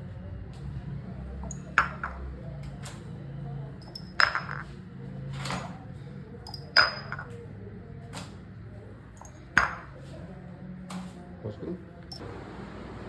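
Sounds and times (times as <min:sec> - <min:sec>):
glass cups clinking: 0:01.4 - 0:02.3, 0:03.8 - 0:04.8, 0:06.4 - 0:07.4, 0:09.2 - 0:10.1.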